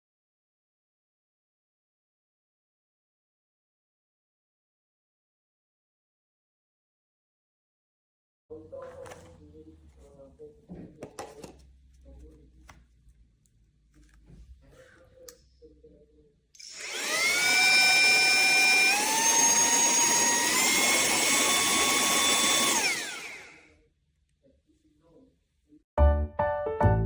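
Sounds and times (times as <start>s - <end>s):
mini vacuum motor whining: 16.6s - 23.7s.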